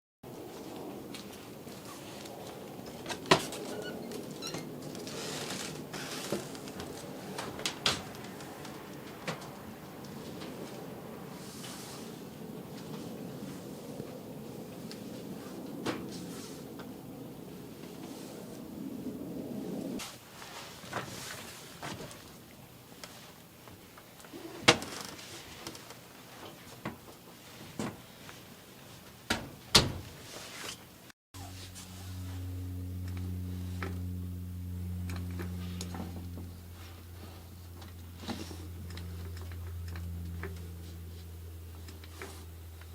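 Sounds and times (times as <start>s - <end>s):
steady low hum: 0.3s - 20.4s, 31.4s - 42.9s.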